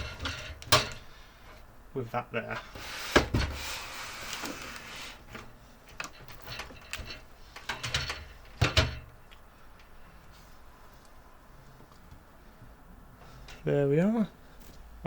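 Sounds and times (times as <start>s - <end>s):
computer parts clicks and knocks: 5.4s - 9.1s.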